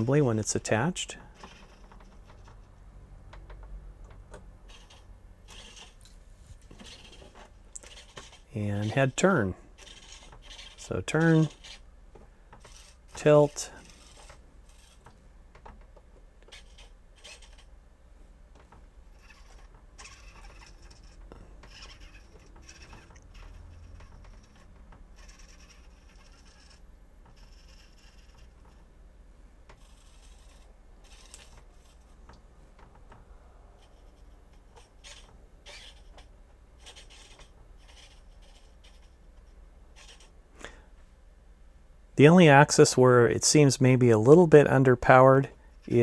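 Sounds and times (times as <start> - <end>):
servo gears whirring: 4.7 - 11.8.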